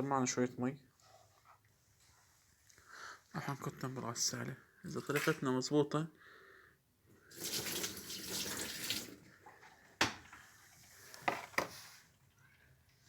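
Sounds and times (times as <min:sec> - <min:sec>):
water running into washing machine: 0:07.3 - 0:09.3.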